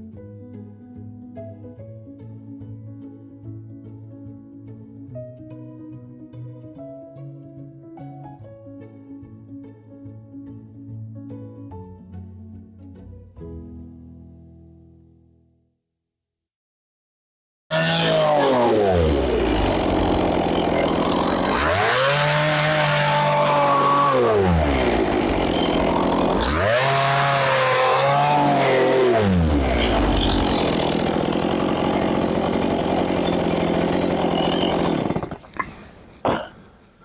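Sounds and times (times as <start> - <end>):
chainsaw idling and revving: 17.7 - 35.7.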